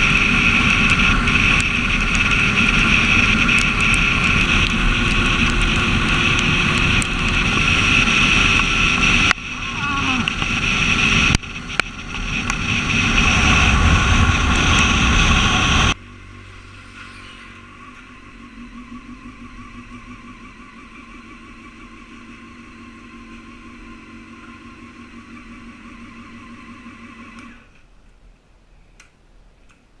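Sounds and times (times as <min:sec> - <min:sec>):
wind rush on microphone: 0:00.0 - 0:16.0
motorcycle engine at speed: 0:00.0 - 0:27.8.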